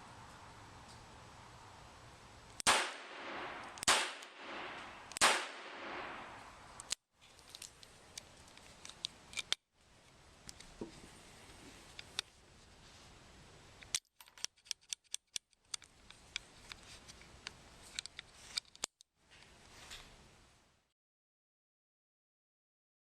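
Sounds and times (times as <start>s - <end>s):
revolver shots with echo: 2.6s - 6.4s.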